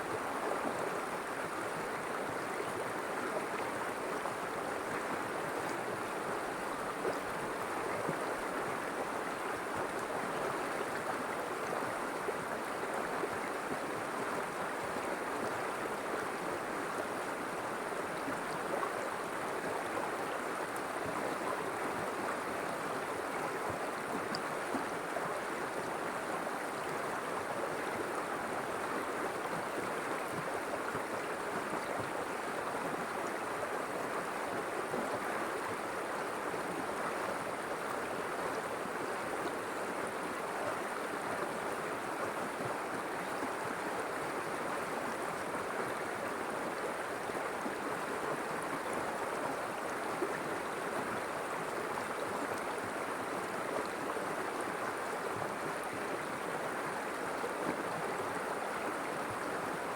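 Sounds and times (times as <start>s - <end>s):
river water flowing and splashing: 0.0s - 59.9s.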